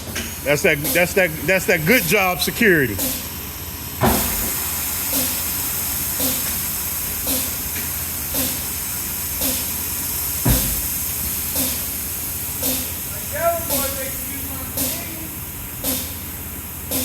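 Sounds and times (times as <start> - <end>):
steady hiss: 4.1 - 17.0
heavy low thump: 10.4 - 10.9.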